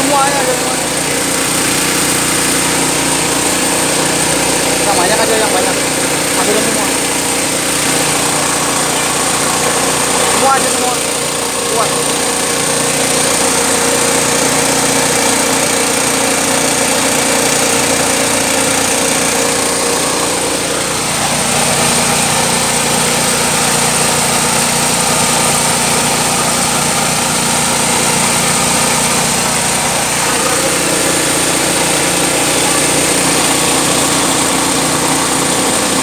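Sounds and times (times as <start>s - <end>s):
small petrol engine running: 0.0s - 36.0s.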